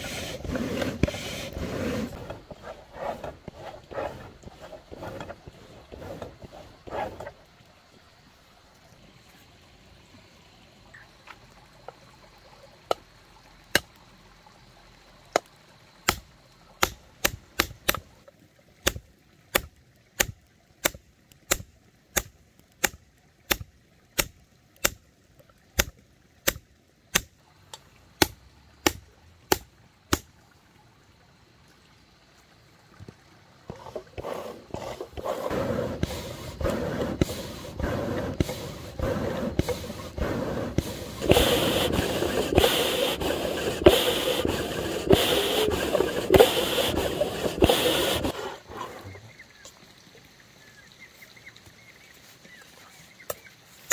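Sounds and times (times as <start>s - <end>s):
loud rushing hiss: 0.0s - 2.3s, 34.2s - 48.7s
hammer blows on hot iron: 34.2s - 48.4s.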